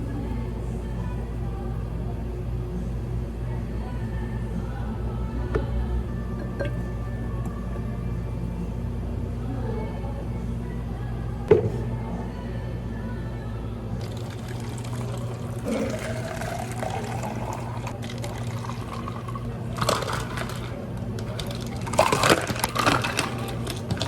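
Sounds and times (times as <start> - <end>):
steady low hum: 0.0 - 24.0
liquid pouring into cup: 14.0 - 24.0.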